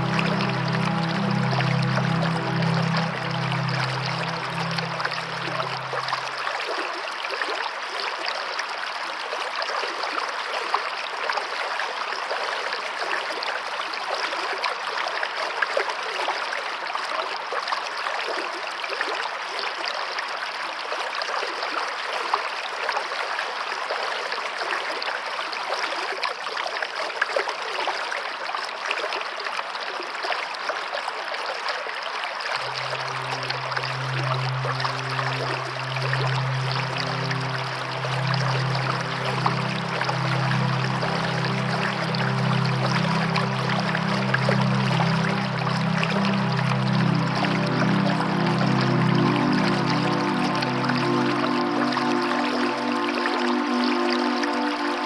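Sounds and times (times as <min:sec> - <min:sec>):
low musical drone: 0:00.0 - 0:06.8, 0:32.6 - 0:55.0
stream water rushing: 0:00.0 - 0:19.3, 0:32.0 - 0:55.0.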